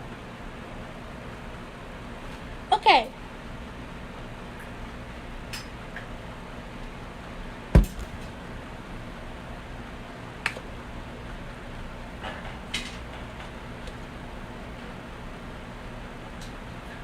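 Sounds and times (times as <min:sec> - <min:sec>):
low room hum: 0:00.0 - 0:17.0
loud thump: 0:07.7 - 0:08.2.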